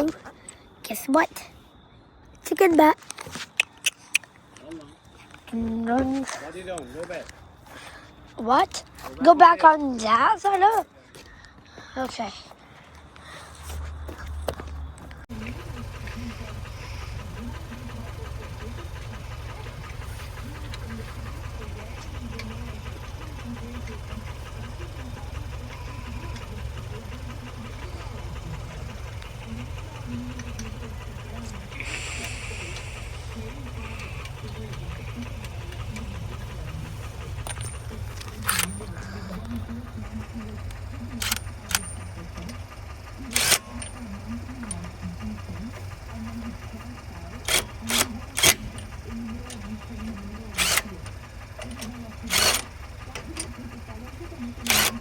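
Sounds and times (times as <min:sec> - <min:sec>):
engine running with low hum: 0:00.0 - 0:55.0
short sharp hisses: 0:31.8 - 0:33.3.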